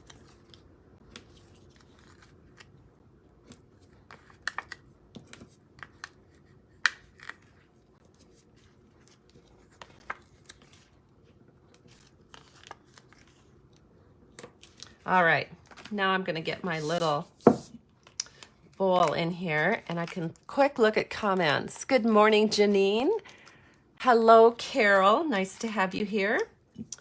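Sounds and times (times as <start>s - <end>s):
paper rustling: 1.2s - 2.7s, 11.7s - 13.6s.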